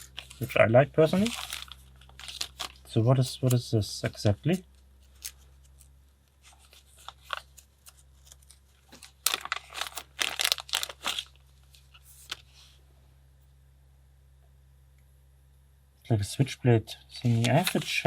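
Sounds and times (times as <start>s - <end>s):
packaging crinkling and tearing: 0.0s - 3.6s, 5.0s - 12.4s, 17.3s - 18.0s.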